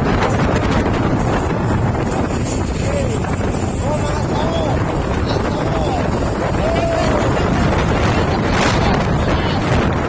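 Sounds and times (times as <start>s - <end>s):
truck rumbling: 0.0s - 10.0s
wind buffeting microphone: 0.0s - 10.0s.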